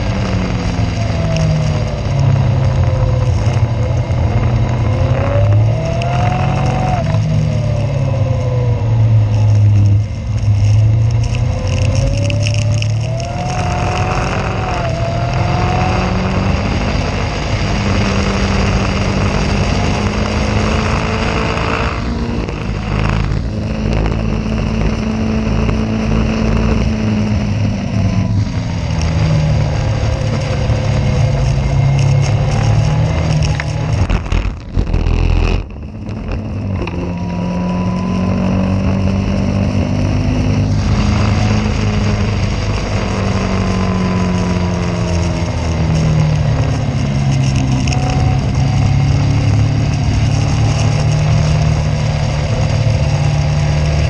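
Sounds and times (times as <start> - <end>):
race car engine accelerating: 0.0 - 54.0.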